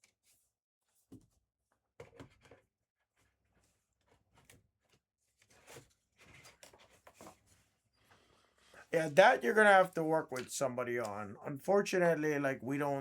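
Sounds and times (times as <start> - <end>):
faint rustling and handling: 3.2 - 9.1.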